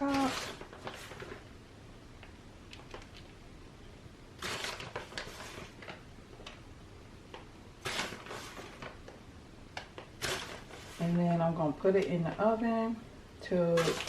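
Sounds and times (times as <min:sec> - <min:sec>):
rustling of shredded cheese: 0:13.8 - 0:14.0.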